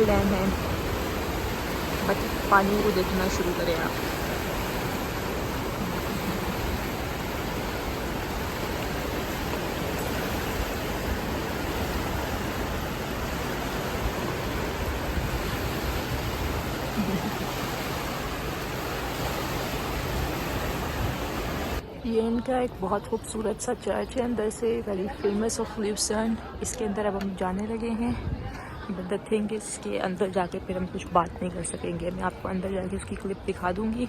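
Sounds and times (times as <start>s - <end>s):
water rushing through weir: 0.0s - 21.8s.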